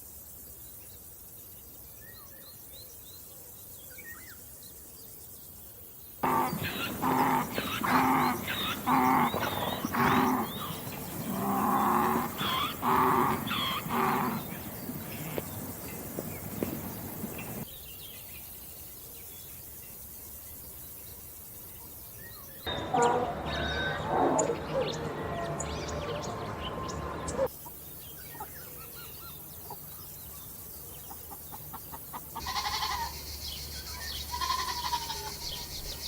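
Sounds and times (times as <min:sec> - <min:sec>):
farm animals calling: 0:06.2 - 0:17.7, 0:22.7 - 0:29.9, 0:31.0 - 0:36.0
bird chirps and calls: 0:06.2 - 0:18.0, 0:22.2 - 0:36.0.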